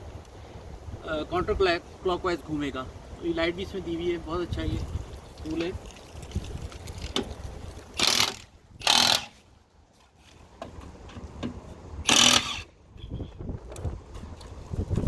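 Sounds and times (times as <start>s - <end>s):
impact driver bursts: 8.0s - 9.4s, 12.0s - 12.7s.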